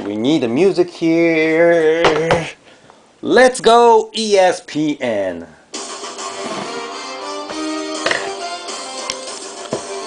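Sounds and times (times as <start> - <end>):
instrumental background music: 5.7 - 10.0.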